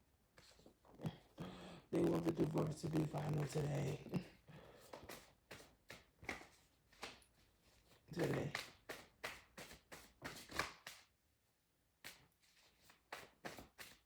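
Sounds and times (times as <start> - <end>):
voice murmuring: 1.8 - 4.4
cards shuffling: 4.8 - 7.2, 7.8 - 11.1, 12.0 - 14.0.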